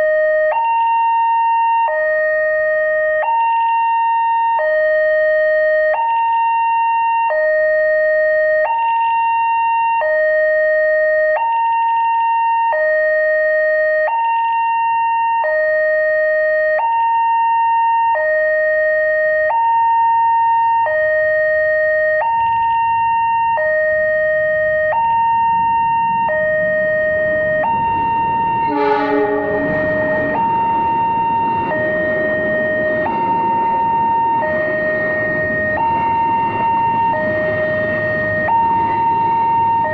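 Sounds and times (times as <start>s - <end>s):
two-tone level crossing siren: 0.0s - 39.9s
broad noise: 22.4s - 39.9s
horn blast: 28.6s - 30.9s.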